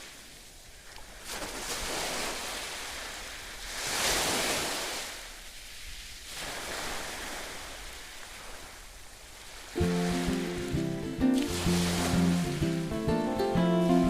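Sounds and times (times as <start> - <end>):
ocean waves washing in: 0.0 - 14.0
wave breaking: 9.7 - 14.0.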